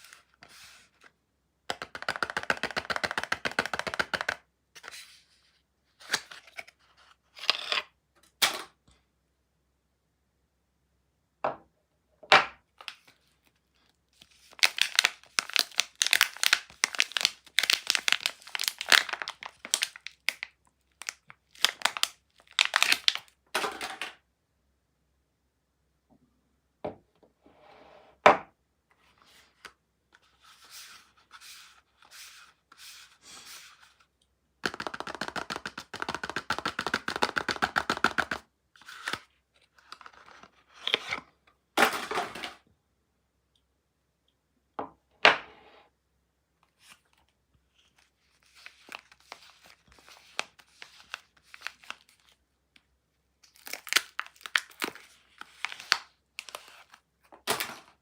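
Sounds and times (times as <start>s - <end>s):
wrappers tearing and crinkling: 14.4s - 23.3s, 53.5s - 57.6s.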